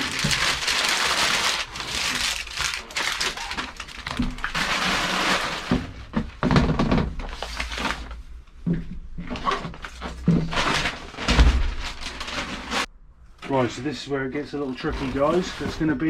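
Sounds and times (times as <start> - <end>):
material rustling and crinkling: 0.0 - 12.9, 14.7 - 16.0
knocks and thunks: 11.2 - 11.9.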